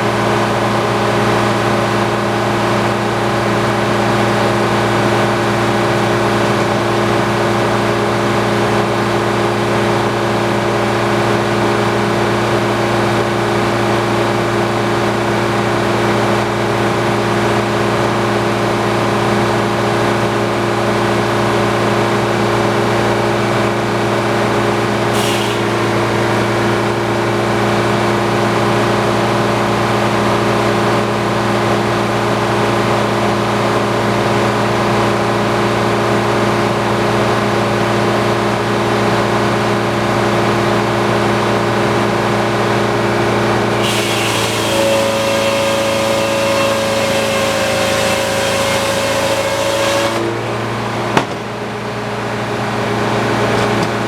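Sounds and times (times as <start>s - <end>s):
sawmill engine drone: 0.0s - 54.0s.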